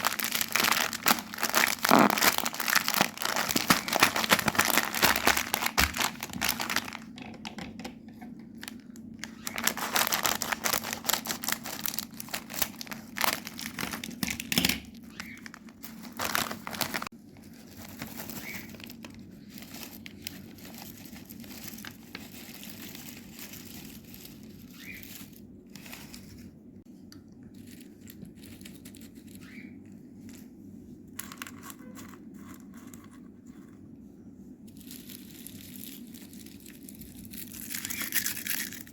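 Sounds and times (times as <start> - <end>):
wrapper crinkling and tearing: 0.0 - 7.2, 8.5 - 26.6, 34.8 - 38.9.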